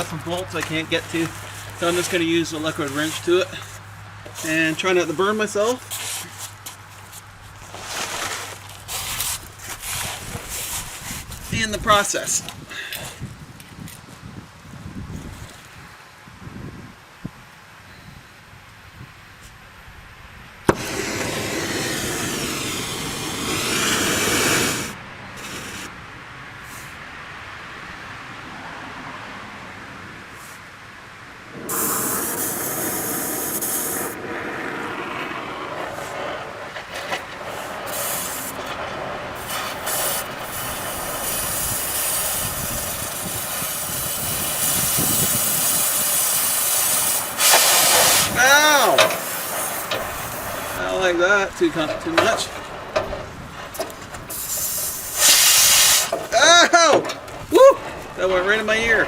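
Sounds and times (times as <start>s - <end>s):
sharp pop: 20.7s - 21.9s
cutting torch hissing: 20.7s - 26.0s, 31.5s - 34.3s, 37.5s - 38.7s, 39.4s - 52.6s, 54.2s - 56.4s.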